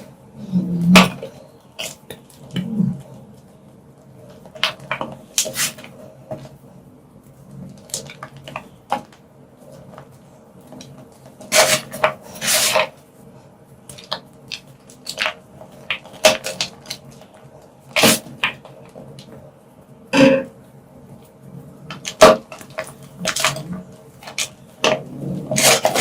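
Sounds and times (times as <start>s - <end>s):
chalk blocks crunching: 11.4s - 12.9s, 21.9s - 26.0s.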